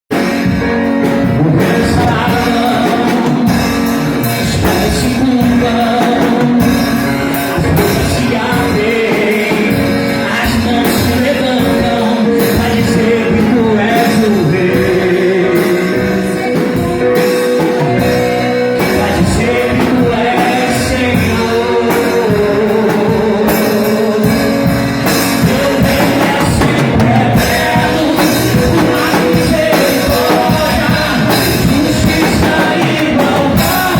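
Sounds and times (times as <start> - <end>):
drum kit beat: 0.1 - 33.9
person singing: 0.1 - 33.9
worship band playing: 0.1 - 33.9.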